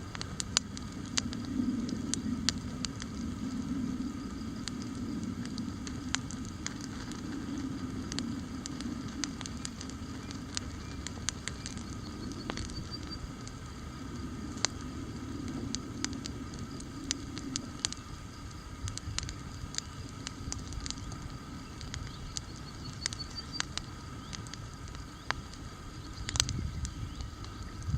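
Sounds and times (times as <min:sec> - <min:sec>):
campfire crackling: 0:00.0 - 0:27.9.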